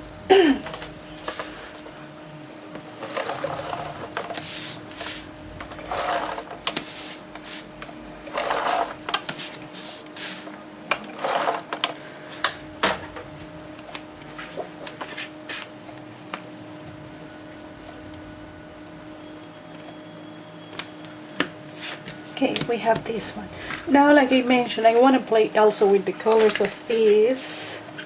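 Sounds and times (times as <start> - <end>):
paper rustling and rubbing: 3.0 - 10.5, 14.3 - 15.8, 26.2 - 27.7.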